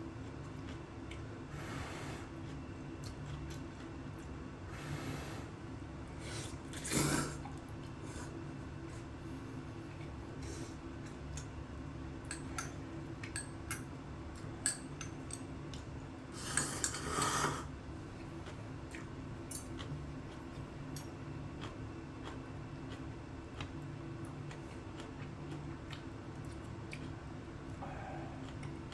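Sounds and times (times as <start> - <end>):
noodle slurp: 6.3 - 7.5.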